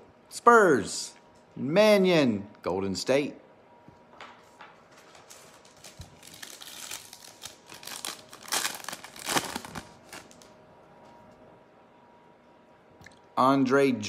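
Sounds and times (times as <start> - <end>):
foil wrapper crinkling: 4.9 - 10.5.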